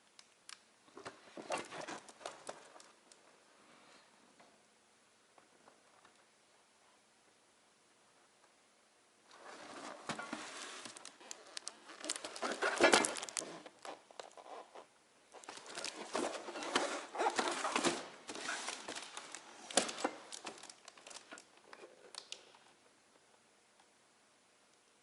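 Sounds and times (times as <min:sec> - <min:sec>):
cardboard box rustling: 0:11.7 - 0:14.7, 0:15.4 - 0:21.3.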